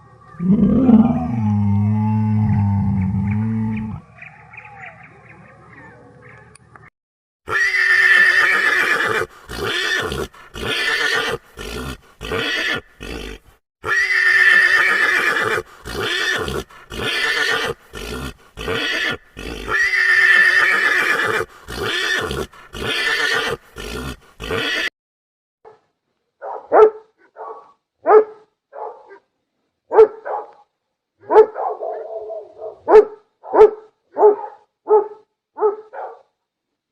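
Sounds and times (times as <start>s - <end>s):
horse whinnying: 7.5s - 24.9s.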